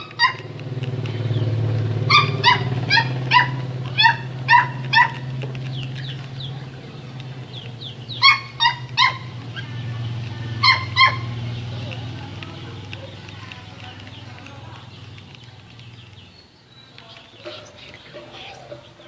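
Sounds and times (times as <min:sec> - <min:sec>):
dog yapping: 0:00.0 - 0:00.7, 0:02.0 - 0:07.0, 0:08.0 - 0:16.1
steady low hum: 0:00.0 - 0:19.0.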